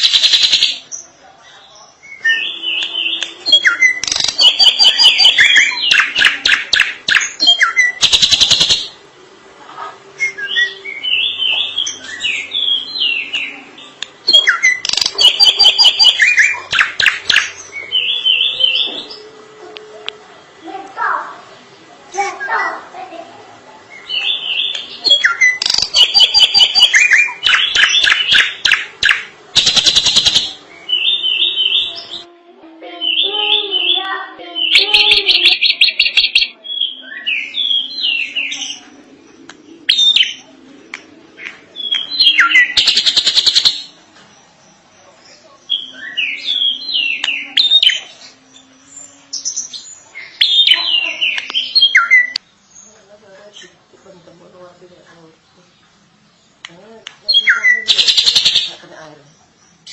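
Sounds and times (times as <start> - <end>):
bird whistling and chattering: 2.0 - 9.0, 14.2 - 19.2, 24.0 - 32.2, 33.1 - 44.1, 45.3 - 52.4, 57.3 - 58.8.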